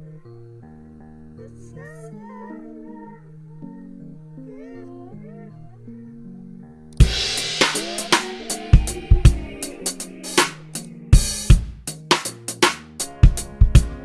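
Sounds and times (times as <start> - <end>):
cymbal crash: 7.0 - 13.2
drum kit rock beat: 7.0 - 14.0.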